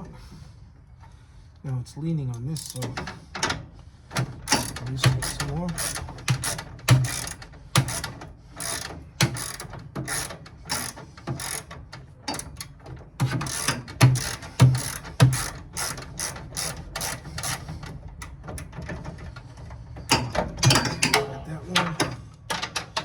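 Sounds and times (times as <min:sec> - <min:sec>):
socket ratchet clicking: 0:04.5 - 0:11.7, 0:12.3 - 0:17.7.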